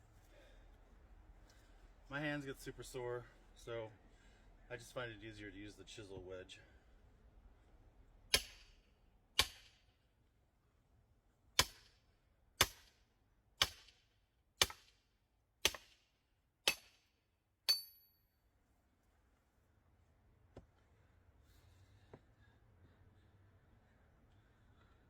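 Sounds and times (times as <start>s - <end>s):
hammer striking metal wedge: 8.3s - 8.7s, 9.4s - 9.8s, 11.6s - 12.0s, 12.6s - 13.0s, 13.6s - 14.0s, 14.6s - 15.0s, 15.6s - 16.0s, 16.6s - 17.1s, 17.7s - 18.2s.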